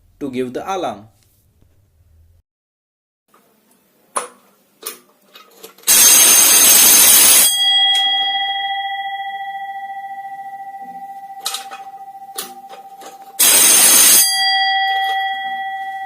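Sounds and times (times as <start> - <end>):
electric alarm bell ringing: 5.9 - 16.0
gong ringing on: 7.4 - 16.0.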